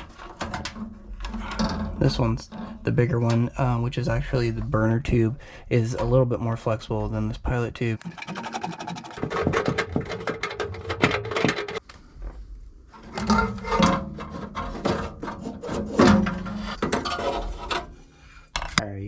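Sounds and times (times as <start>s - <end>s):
metal parts knocking and scraping: 8.0s - 11.8s.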